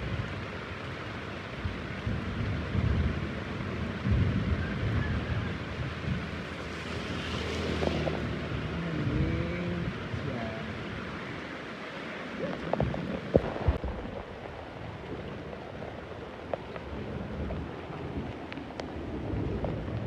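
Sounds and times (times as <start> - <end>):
heavy rain: 0.0 - 20.0
rolling thunder: 1.6 - 8.7.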